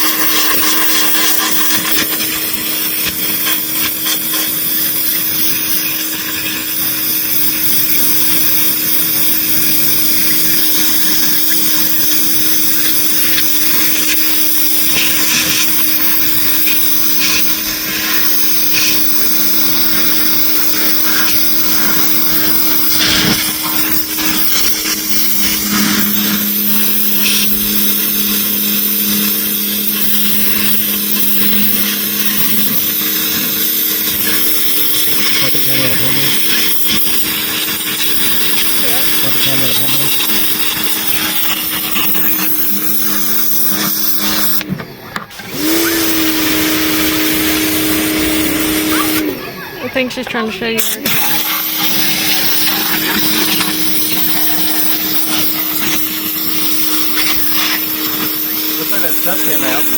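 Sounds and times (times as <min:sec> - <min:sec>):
power tool humming and hissing: 0:00.0 - 0:59.9
lower hum: 0:09.8 - 0:44.7.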